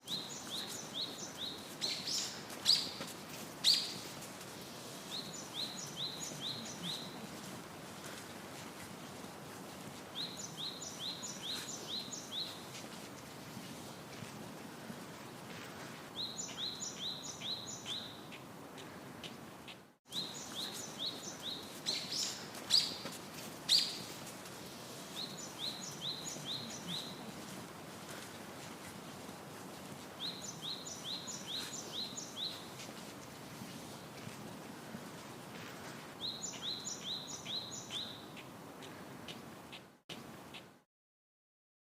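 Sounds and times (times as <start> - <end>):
steady background hiss: 0.0 - 40.8
bird chirping: 19.7 - 23.1, 25.2 - 27.3.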